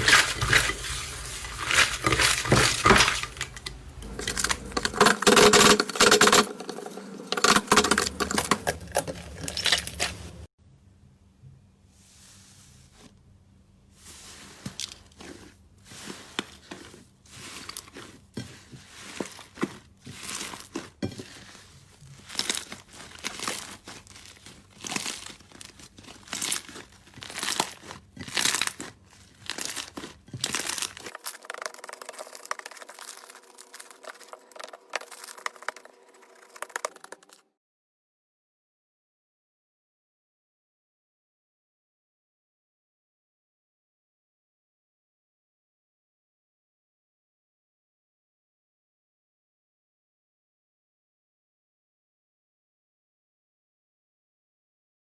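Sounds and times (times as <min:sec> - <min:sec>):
slime crackling and squelching: 0:00.0 - 0:10.5, 0:14.2 - 0:37.4.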